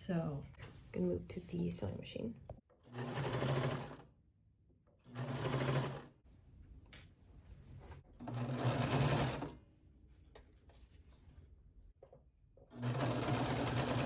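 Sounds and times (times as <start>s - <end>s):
sewing machine stitching: 2.9s - 4.1s, 5.1s - 6.1s, 8.2s - 9.6s, 12.7s - 14.0s.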